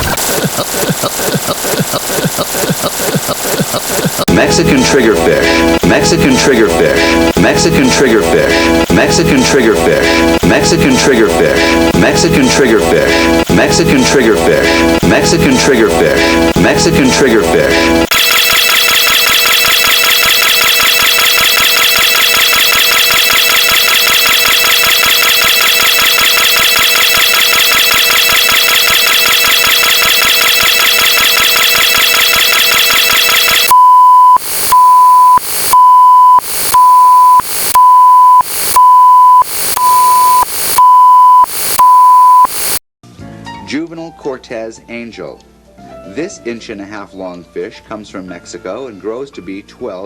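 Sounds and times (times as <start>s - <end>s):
electronic buzzing tone: 18.1s - 42.8s
loud alarm beeps: 18.1s - 42.8s.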